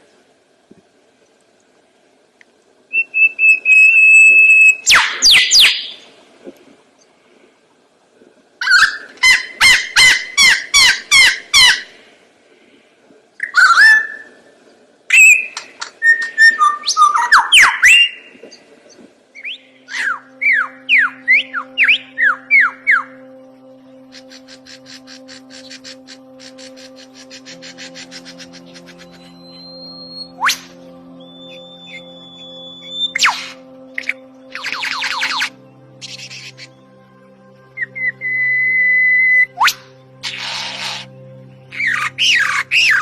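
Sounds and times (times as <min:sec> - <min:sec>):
faint steady hum: 0:00.0 - 0:43.0
bird whistling: 0:02.9 - 0:06.0, 0:13.4 - 0:14.4, 0:15.1 - 0:18.3, 0:19.4 - 0:23.2, 0:24.0 - 0:36.7, 0:37.8 - 0:41.1, 0:41.7 - 0:43.0.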